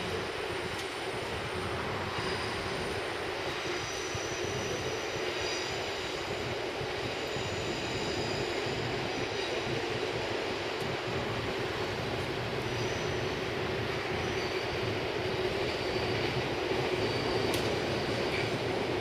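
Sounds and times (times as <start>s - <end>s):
electric train running past: 0.0s - 19.0s
high wheel squeal: 12.7s - 18.8s.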